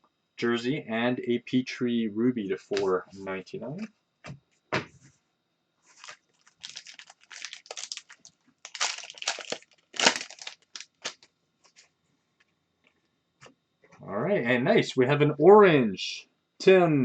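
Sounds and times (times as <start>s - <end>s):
wrappers tearing and crinkling: 5.9s - 11.8s.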